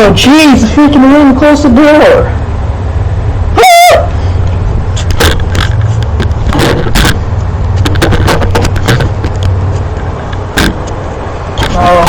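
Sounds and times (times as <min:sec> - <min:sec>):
hard plastic clicking and scraping: 0:05.0 - 0:11.0.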